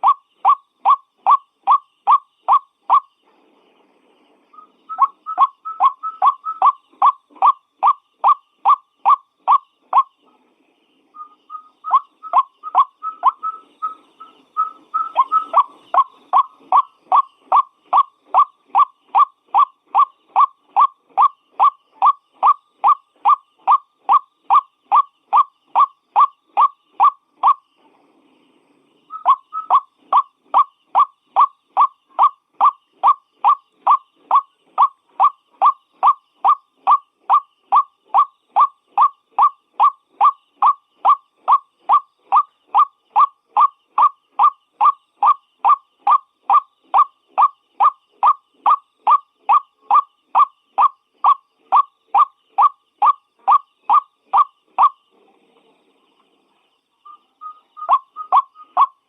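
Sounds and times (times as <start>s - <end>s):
waterhen calling: 4.6s - 10.1s, 11.2s - 27.6s, 29.1s - 55.0s, 57.1s - 59.0s.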